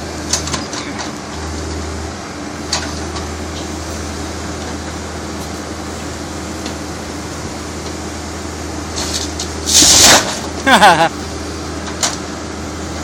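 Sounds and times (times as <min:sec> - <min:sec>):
backhoe engine running: 0:00.0 - 0:13.0
sharp cracks: 0:09.2 - 0:10.5.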